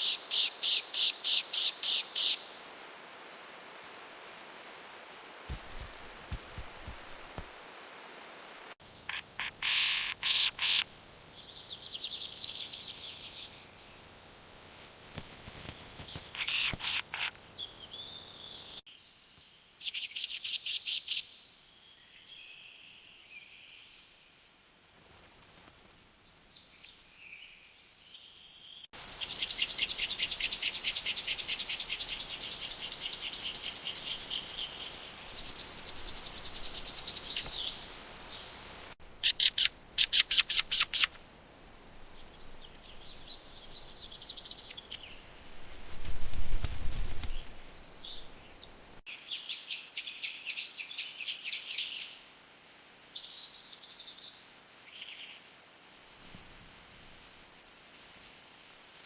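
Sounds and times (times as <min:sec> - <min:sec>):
birds trilling and chirping: 0:39.2 - 0:49.0.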